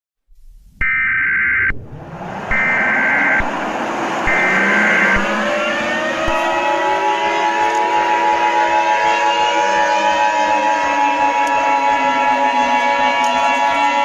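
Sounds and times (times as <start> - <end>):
siren winding up: 0.8 - 8.4
two-tone attention signal: 2.5 - 3.5, 4.2 - 5.4.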